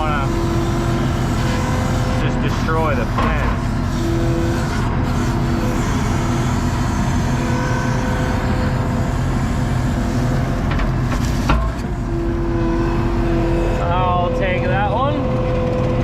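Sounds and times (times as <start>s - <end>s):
diesel engine running: 0.0s - 16.0s
hydraulic whine: 0.0s - 16.0s
knocks and thump: 10.7s - 11.9s.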